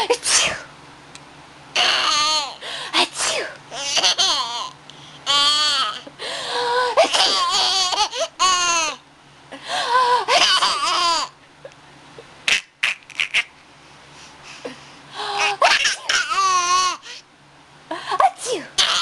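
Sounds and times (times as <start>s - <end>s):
baby laughing: 1.8s - 2.6s, 3.7s - 6.1s, 6.8s - 9.0s, 10.1s - 11.4s, 12.4s - 13.6s, 15.3s - 17.2s, 18.8s - 19.0s.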